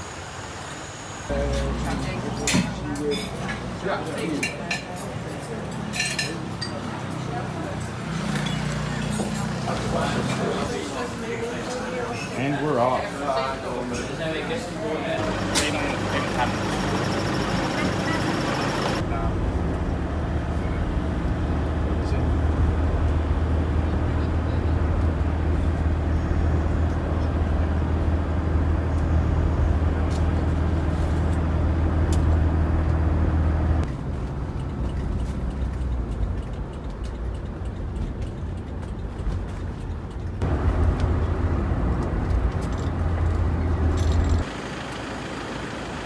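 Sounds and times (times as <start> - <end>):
boat engine droning: 15.2 - 19.6.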